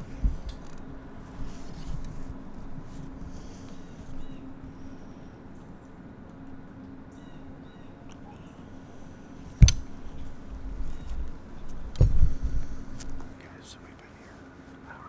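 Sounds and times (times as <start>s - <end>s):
faint bird chirps: 3.1s - 15.0s.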